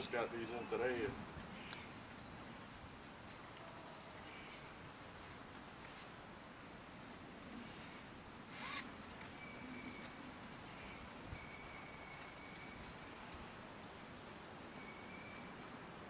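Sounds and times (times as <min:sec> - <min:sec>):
zip-like rasp: 0:08.5 - 0:08.9.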